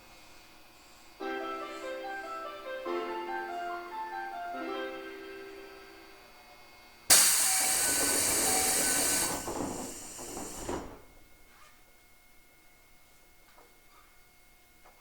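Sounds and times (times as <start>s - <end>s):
compressed air hiss: 7.1s - 11.2s.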